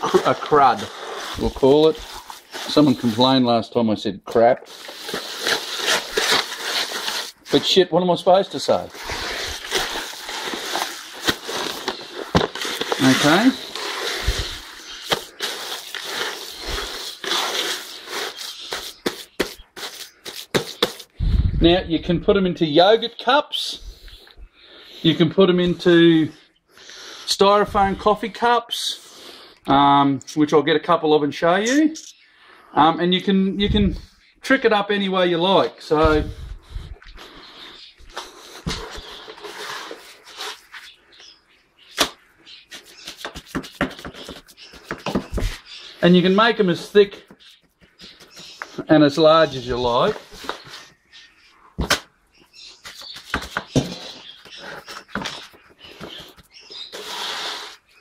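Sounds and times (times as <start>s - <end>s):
gritty scraping in a bucket: 0.0s - 3.4s, 4.7s - 7.8s, 8.6s - 21.0s, 38.4s - 40.9s, 53.7s - 57.9s.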